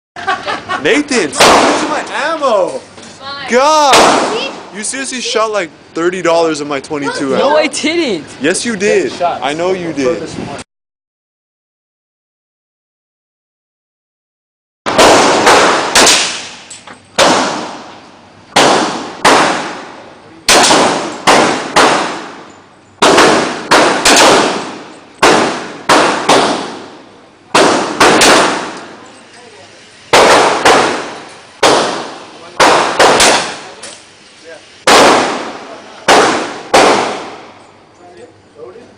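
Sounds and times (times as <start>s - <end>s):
gunshots echoing: 1.4s - 2.1s, 3.8s - 4.8s, 14.9s - 29.0s, 30.1s - 33.8s, 34.8s - 37.6s.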